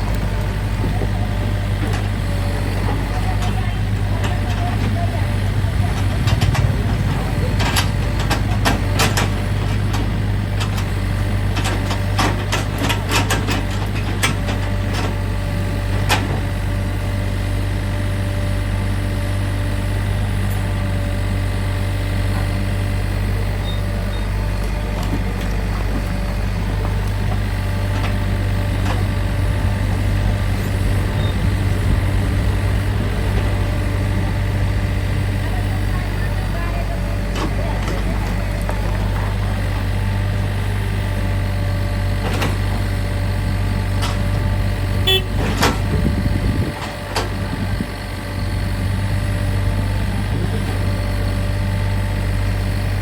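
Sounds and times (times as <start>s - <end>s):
excavator diesel engine running: 0.0s - 53.0s
sharp clicks and knocks: 5.7s - 15.2s.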